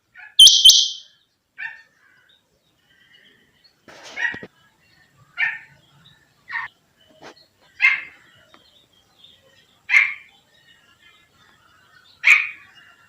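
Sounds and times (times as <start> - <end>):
quail calling: 0.4 - 1.1.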